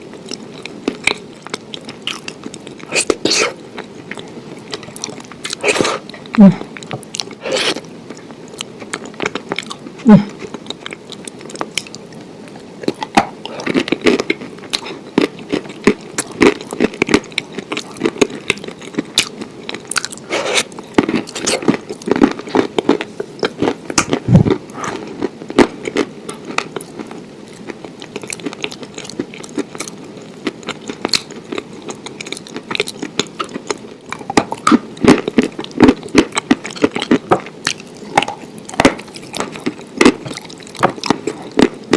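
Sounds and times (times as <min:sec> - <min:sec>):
person chewing crunchy food: 0:00.0 - 0:41.9.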